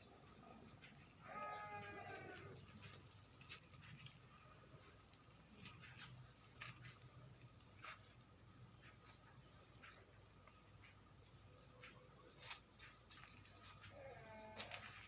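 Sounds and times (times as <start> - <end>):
faint clicks and taps: 0.2 - 14.0.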